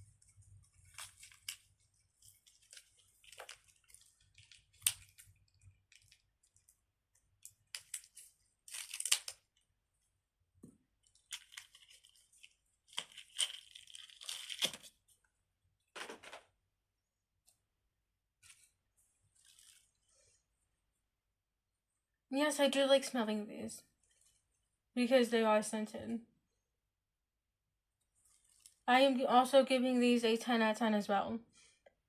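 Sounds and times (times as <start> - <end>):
plastic crinkling and rustling: 0.0 - 9.6, 11.0 - 15.2, 18.4 - 20.3, 24.0 - 24.6, 28.2 - 28.8.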